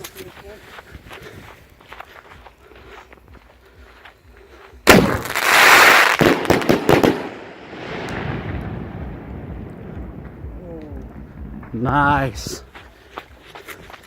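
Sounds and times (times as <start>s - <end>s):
firework bang: 4.9s - 11.1s
firework cracks: 4.9s - 11.3s.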